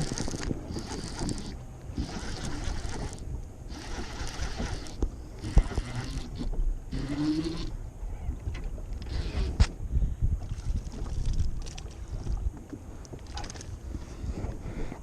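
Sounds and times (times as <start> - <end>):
fishing reel being cranked: 0.0 - 7.8.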